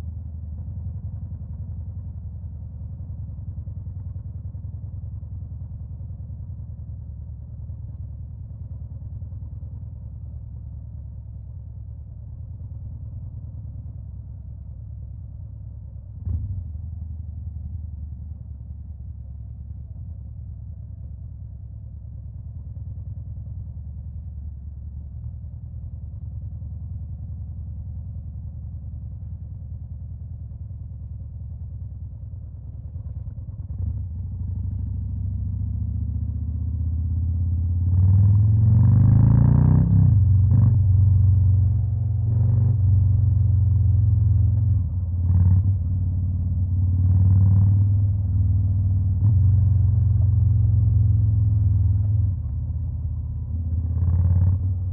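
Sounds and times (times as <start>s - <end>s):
motorcycle engine idling: 0.1s - 37.9s.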